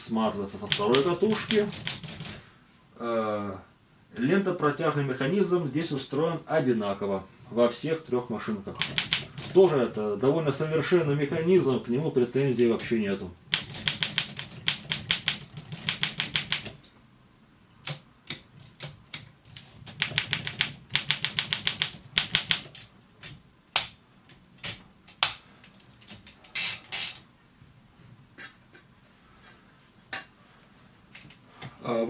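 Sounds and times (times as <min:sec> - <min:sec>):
manual typewriter keystrokes: 0:00.6 - 0:02.4, 0:08.8 - 0:09.6, 0:13.5 - 0:16.8, 0:17.9 - 0:24.0.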